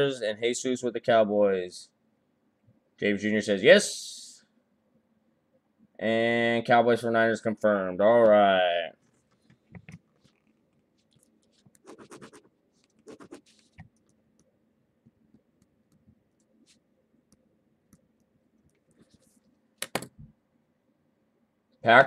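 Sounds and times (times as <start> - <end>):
scratchy rustles: 9.0 - 13.9.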